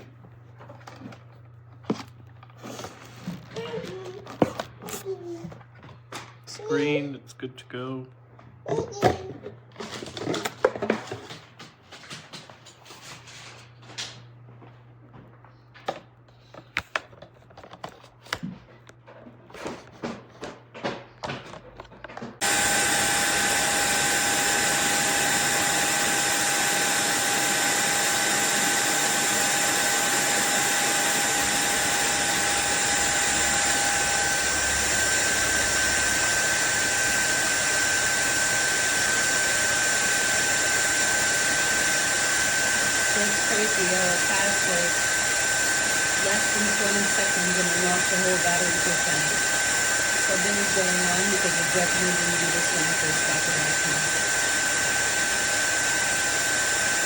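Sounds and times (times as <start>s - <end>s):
stick vacuum motor whine: 22.0s - 57.0s.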